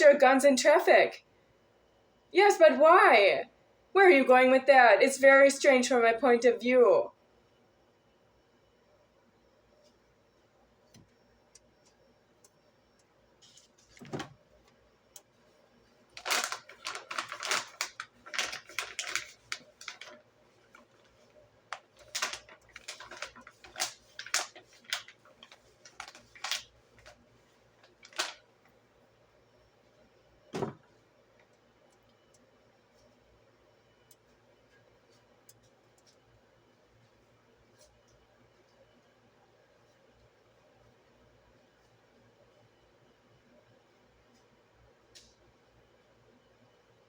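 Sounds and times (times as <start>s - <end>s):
dull thump: 30.6s - 30.8s.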